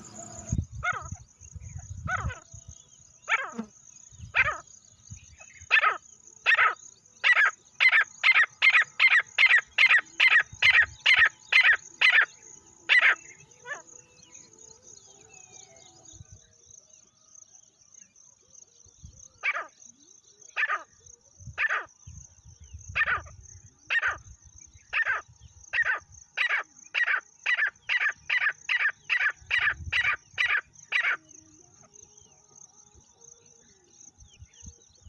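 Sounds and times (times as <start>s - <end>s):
francolin calling: 0.0s - 16.3s, 22.8s - 33.1s.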